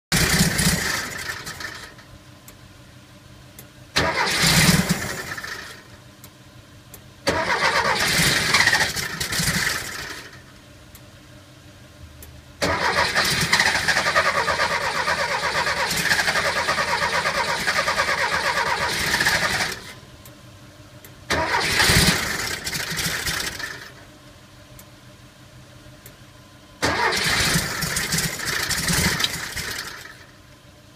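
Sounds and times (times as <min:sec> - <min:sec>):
car engine cranking: 0:00.2 - 0:02.0, 0:04.0 - 0:05.8, 0:07.2 - 0:10.4, 0:12.6 - 0:20.0, 0:21.3 - 0:24.0, 0:26.8 - 0:30.2.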